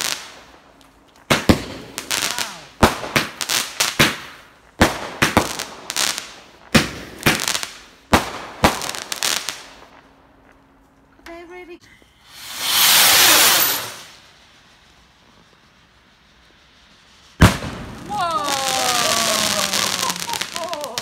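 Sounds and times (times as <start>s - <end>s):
fireworks bangs and crackling: 0.0s - 10.5s, 12.2s - 21.0s.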